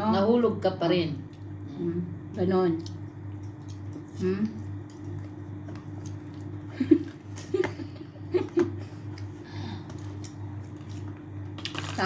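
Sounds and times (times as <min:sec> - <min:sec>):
steady low hum: 0:00.0 - 0:12.0
person chuckling: 0:06.7 - 0:09.0.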